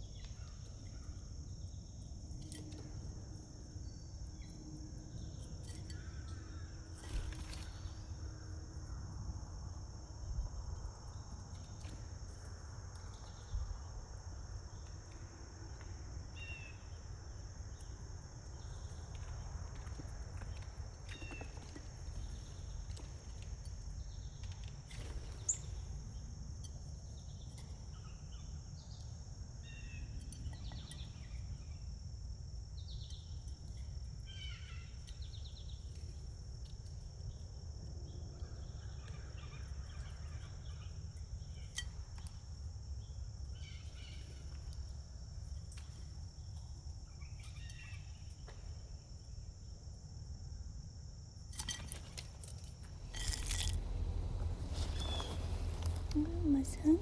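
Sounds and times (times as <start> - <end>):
high insect trill: 0.0 - 57.0
low rumble: 52.8 - 57.0
bird chirps: 53.8 - 57.0.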